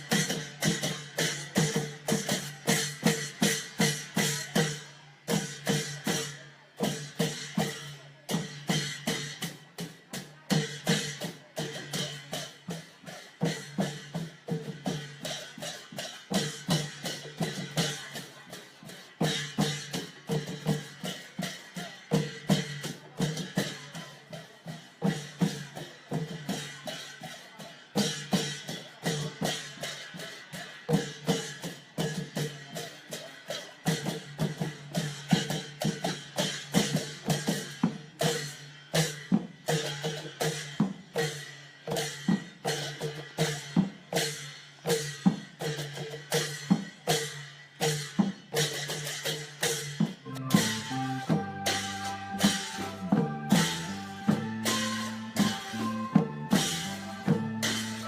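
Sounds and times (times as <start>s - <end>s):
long drums playing fast beat: 0.0s - 58.0s.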